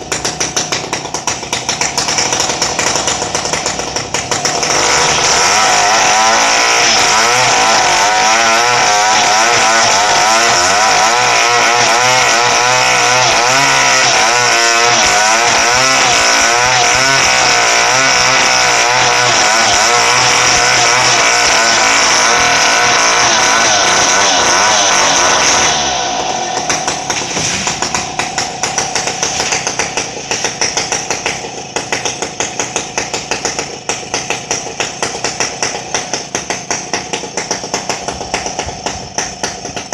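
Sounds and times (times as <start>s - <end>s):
sharp knocks: 0.0s - 5.7s, 19.4s - 39.9s
chainsaw cutting at high revs: 0.0s - 39.9s.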